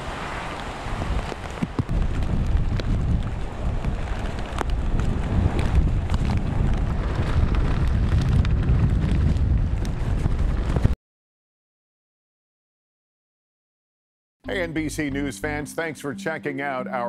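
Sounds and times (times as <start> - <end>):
rain: 0.0 - 11.0
wind buffeting microphone: 0.0 - 11.0.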